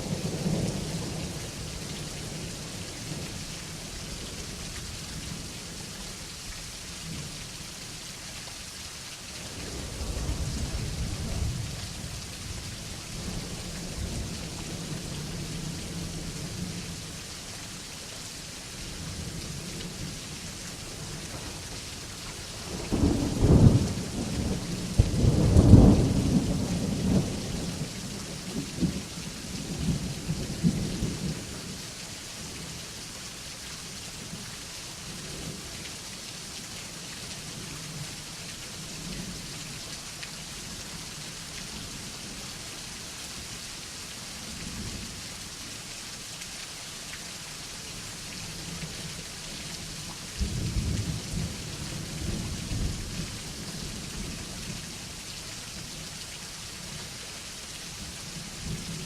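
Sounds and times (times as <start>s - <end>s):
steady rain falling: 0.0s - 59.0s
low rolling thunder: 22.7s - 29.0s.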